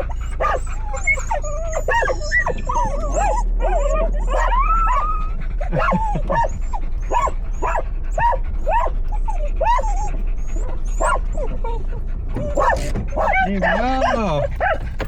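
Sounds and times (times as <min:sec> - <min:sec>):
dogs whining and yipping: 0:00.0 - 0:15.0
low steady hum: 0:00.0 - 0:15.0.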